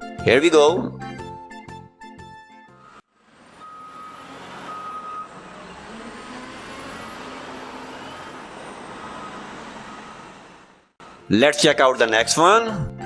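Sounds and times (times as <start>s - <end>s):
reversing beeper: 2.8s - 10.6s
heavy vehicle engine running: 3.0s - 11.3s.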